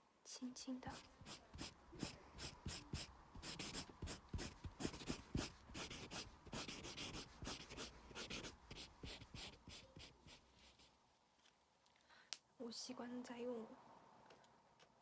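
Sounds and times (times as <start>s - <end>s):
marker rubbing on paper: 0.9s - 10.9s.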